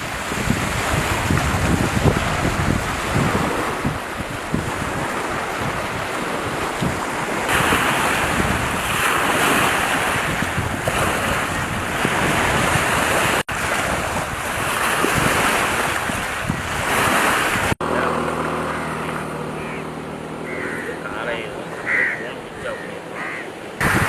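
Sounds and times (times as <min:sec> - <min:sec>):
wind buffeting microphone: 0:00.0 - 0:17.8, 0:23.7 - 0:24.0
river water rushing: 0:00.0 - 0:24.0
wind: 0:00.0 - 0:24.0.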